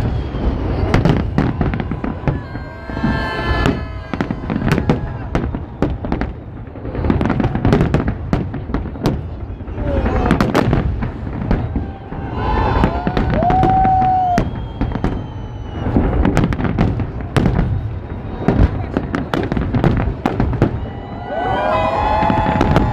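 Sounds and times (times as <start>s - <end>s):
crowd voices: 0.0s - 22.9s
fireworks bangs and crackling: 0.0s - 22.9s
long high note: 1.5s - 5.8s.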